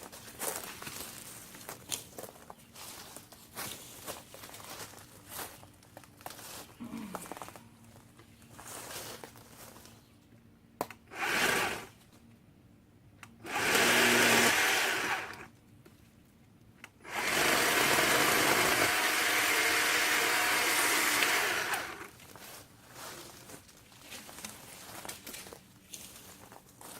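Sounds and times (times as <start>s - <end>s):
electric chainsaw cutting branches: 11.1s - 11.9s, 13.4s - 15.5s, 17.0s - 22.2s.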